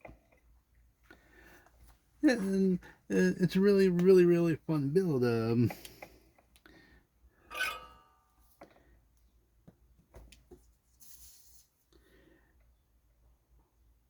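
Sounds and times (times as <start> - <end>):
ringing metal clink: 7.5 - 8.2.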